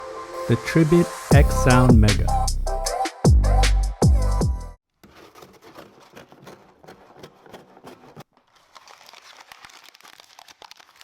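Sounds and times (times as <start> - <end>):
packaging crinkling: 7.4 - 11.0.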